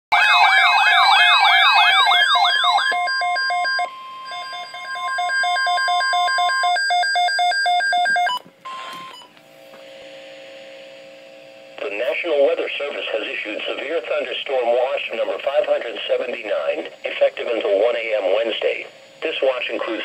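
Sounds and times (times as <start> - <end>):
electronic siren sweeping: 0.1 - 6.9
fast pulsing alarm beeps: 0.2 - 9.3.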